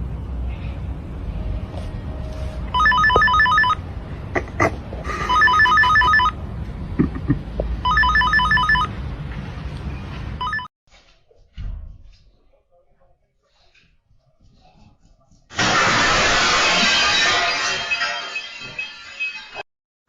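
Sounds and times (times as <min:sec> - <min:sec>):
electronic telephone ringer trilling: 0:02.8 - 0:03.8, 0:05.1 - 0:06.3
steady low rumble: 0:06.4 - 0:07.9.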